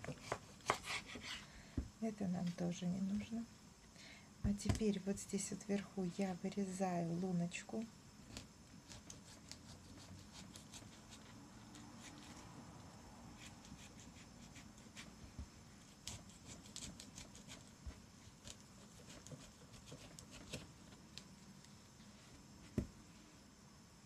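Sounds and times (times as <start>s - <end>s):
knife scraping radish: 0.0s - 1.4s, 8.3s - 12.4s, 13.4s - 15.1s, 15.8s - 20.7s.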